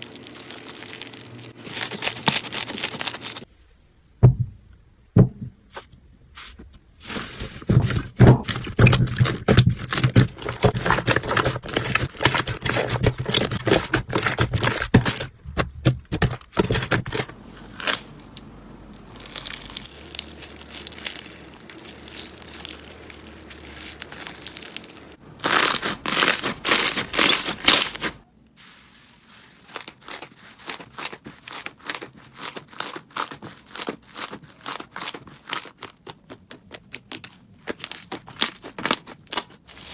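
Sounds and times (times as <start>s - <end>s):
slime crackling and popping: 0.0s - 3.5s, 17.8s - 28.2s
sticky slime squishing: 0.0s - 3.5s, 6.5s - 28.3s, 29.0s - 39.9s.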